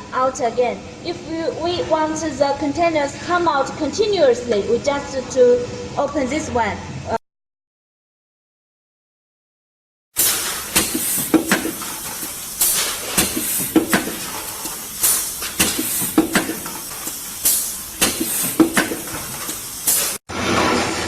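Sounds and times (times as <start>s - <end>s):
steady mechanical hum: 0.0s - 7.2s, 10.2s - 21.0s
compressed air hiss: 10.2s - 20.2s
sharp metallic clank: 10.2s - 20.2s.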